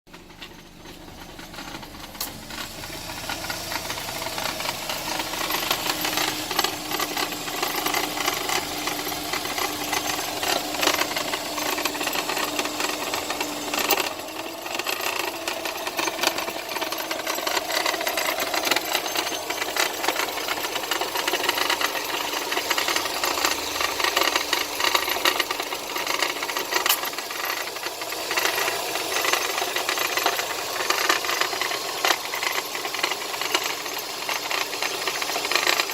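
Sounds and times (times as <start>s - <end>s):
car engine idling: 0.1s - 35.9s
dense metallic rattle: 0.1s - 35.9s.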